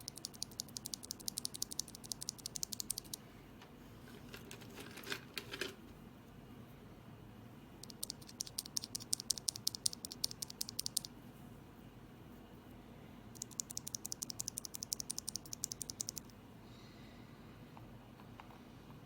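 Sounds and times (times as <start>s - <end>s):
rapid keyboard typing: 0.0s - 3.2s, 7.8s - 11.1s, 13.4s - 16.3s.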